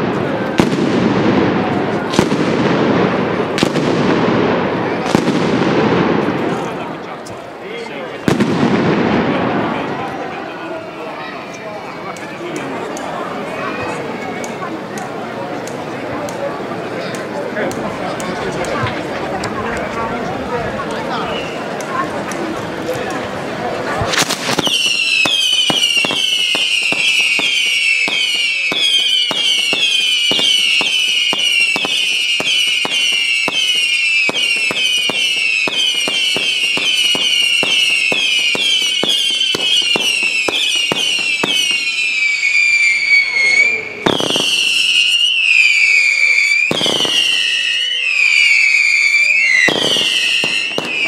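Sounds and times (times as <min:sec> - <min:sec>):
fireworks whistling: 0:00.0 - 0:07.0, 0:21.2 - 0:21.8, 0:23.9 - 0:51.0
heavy firework bangs: 0:00.0 - 0:07.0, 0:08.1 - 0:10.3, 0:23.9 - 0:42.8, 0:44.0 - 0:51.0
fireworks cracking: 0:00.0 - 0:10.6, 0:20.7 - 0:51.0.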